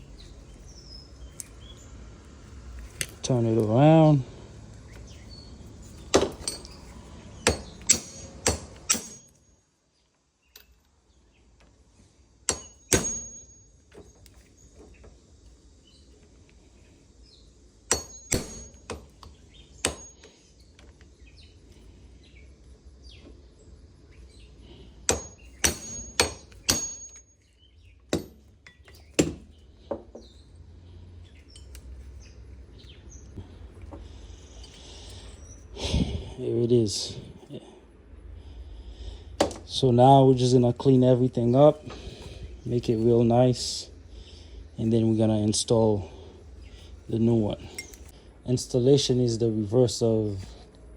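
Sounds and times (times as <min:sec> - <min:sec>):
hammer striking metal: 0:06.1 - 0:09.5, 0:12.5 - 0:13.7, 0:17.9 - 0:19.1, 0:19.8 - 0:20.3, 0:25.1 - 0:27.4.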